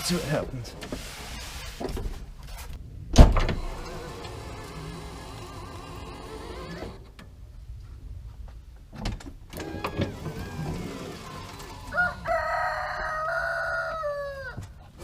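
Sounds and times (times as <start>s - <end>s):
door shutting with clicks and knocks: 3.1s - 4.8s, 8.9s - 11.8s
electric step motor whining: 3.4s - 7.2s, 9.5s - 12.3s.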